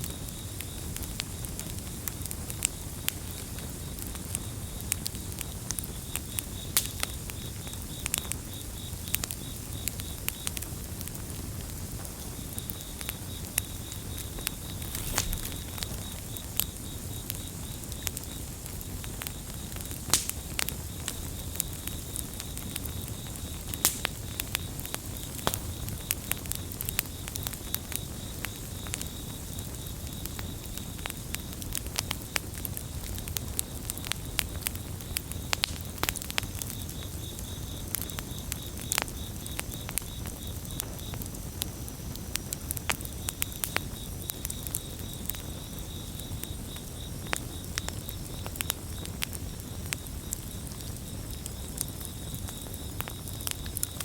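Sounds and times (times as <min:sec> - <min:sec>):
campfire crackling: 0:00.0 - 0:54.0
crickets chirping: 0:00.0 - 0:54.0.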